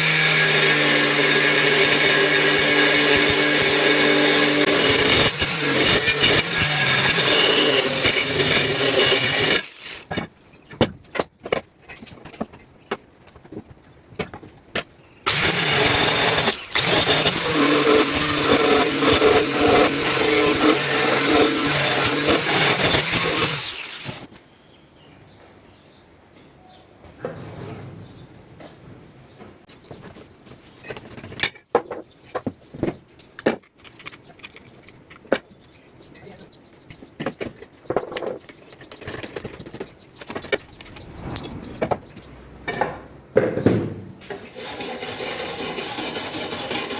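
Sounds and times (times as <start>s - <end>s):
power tool grinding metal: 0.0s - 10.2s, 15.3s - 24.3s, 44.5s - 46.9s.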